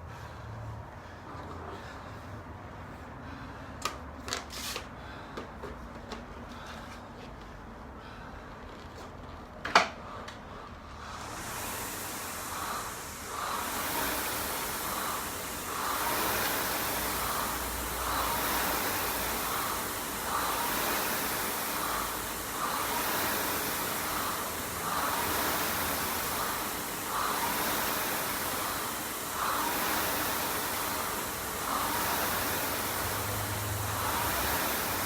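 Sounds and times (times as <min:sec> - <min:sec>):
rowing machine flywheel whooshing: 0:10.6 - 0:35.0.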